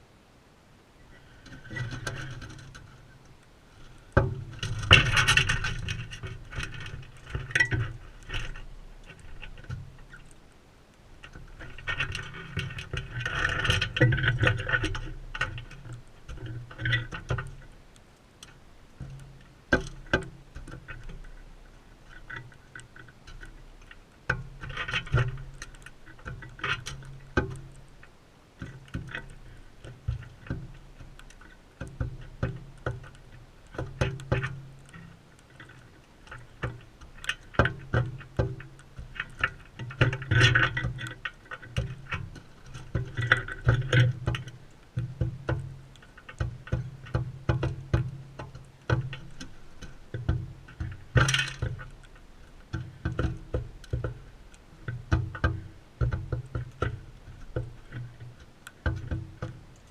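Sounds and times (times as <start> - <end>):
beaks knocking on feeder: 46.4 - 51.8, 52.7 - 58.2.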